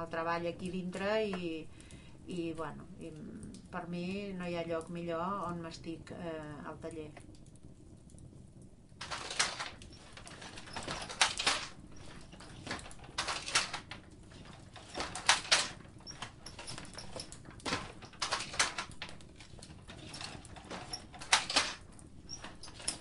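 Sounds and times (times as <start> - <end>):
wooden loom clacking: 9.0 - 23.0.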